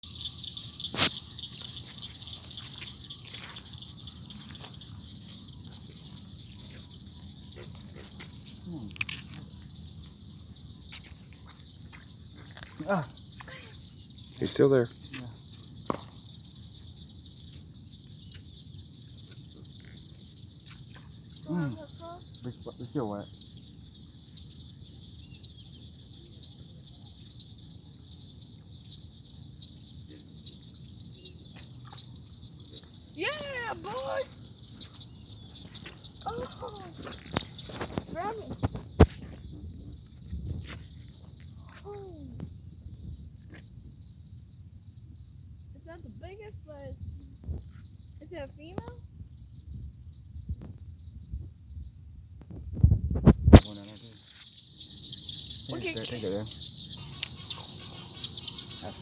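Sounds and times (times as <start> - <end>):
crickets chirping: 0.0 - 59.0
night insects trilling: 0.0 - 59.0.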